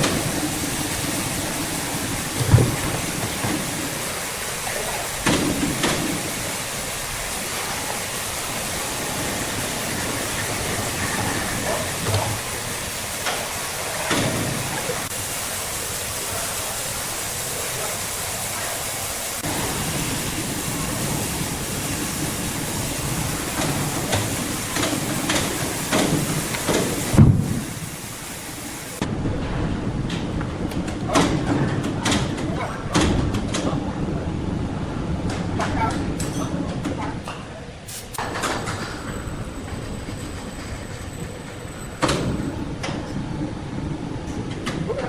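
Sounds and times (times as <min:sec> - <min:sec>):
sawmill machinery running: 0:00.0 - 0:29.2, 0:38.1 - 0:44.8.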